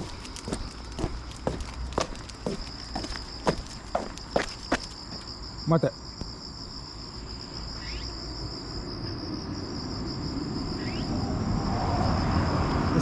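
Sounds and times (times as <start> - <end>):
insects chirring: 0.0 - 13.0
rising chirps: 10.6 - 13.0.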